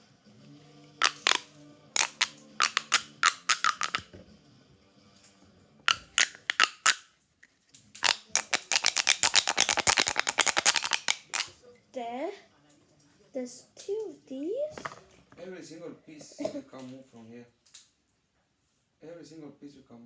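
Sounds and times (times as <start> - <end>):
plastic fidget toy clicking: 1.0 - 4.1, 5.9 - 7.0, 8.0 - 11.5.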